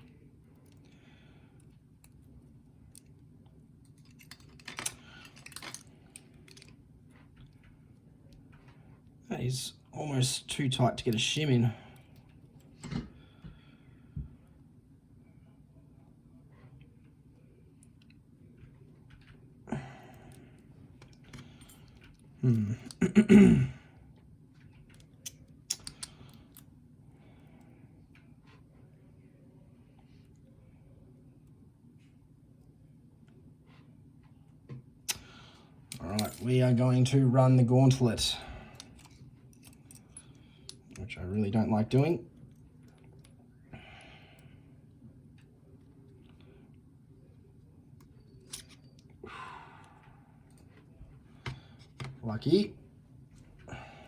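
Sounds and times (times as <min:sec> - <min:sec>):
man clearing his throat: 0:22.4 - 0:23.9
metallic clicks and scrapes of lock: 0:24.9 - 0:26.6, 0:48.4 - 0:49.0.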